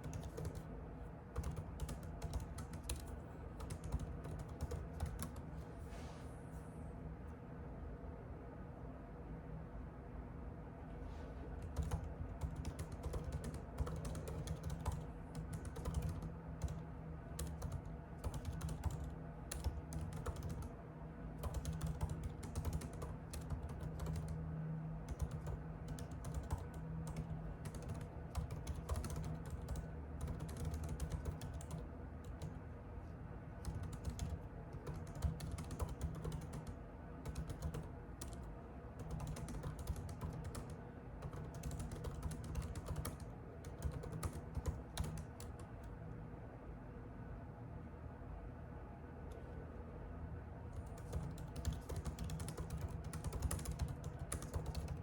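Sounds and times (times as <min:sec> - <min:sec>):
keyboard typing: 0:00.0 - 0:00.7, 0:01.3 - 0:05.5, 0:11.6 - 0:16.8, 0:17.4 - 0:20.7, 0:21.4 - 0:24.4, 0:25.0 - 0:32.6, 0:33.6 - 0:46.0, 0:50.8 - 0:55.0.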